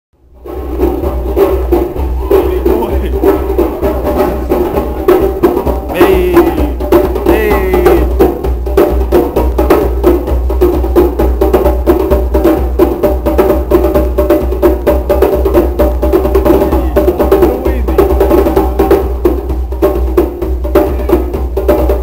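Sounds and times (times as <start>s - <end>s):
rapid percussion hits: 0.2s - 22.0s
wavering pitched voice: 2.2s - 8.1s.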